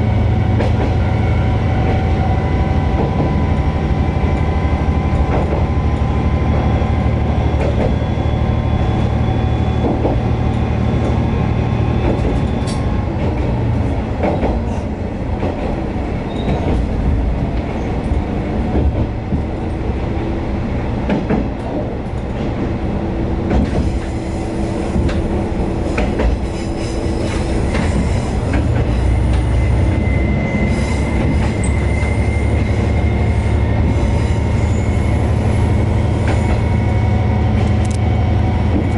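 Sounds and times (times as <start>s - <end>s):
wheel squeal: 25.8s - 37.0s
diesel engine drone: 27.2s - 38.9s.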